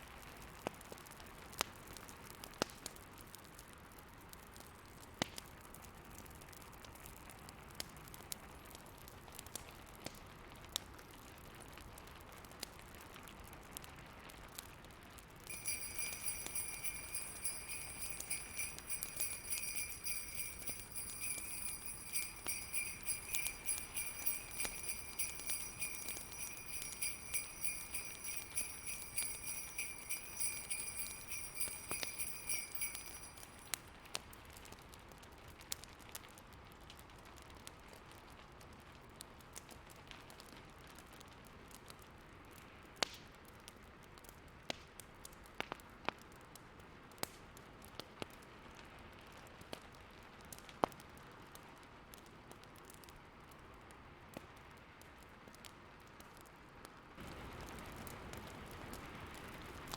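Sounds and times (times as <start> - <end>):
fireplace crackling and popping: 15.4 - 34.2
jingle bells shaken: 15.5 - 33.8.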